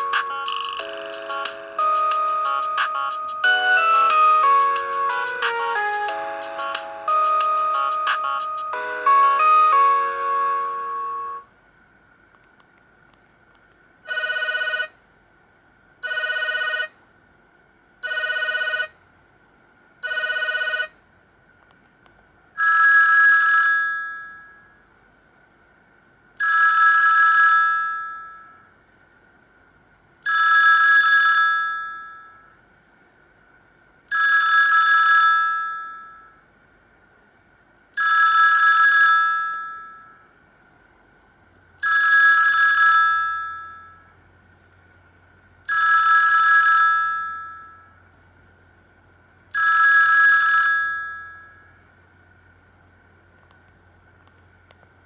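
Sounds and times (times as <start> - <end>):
phone ringing tone: 0.0 - 11.5, 14.1 - 15.0, 16.0 - 17.0, 18.0 - 19.0, 20.0 - 21.0.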